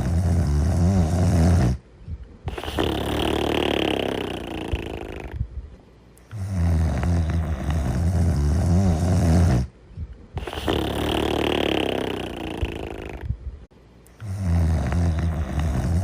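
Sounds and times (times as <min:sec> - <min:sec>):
person snoring: 0:00.0 - 0:01.8, 0:02.5 - 0:05.4, 0:06.3 - 0:09.7, 0:10.4 - 0:13.3, 0:14.2 - 0:16.0.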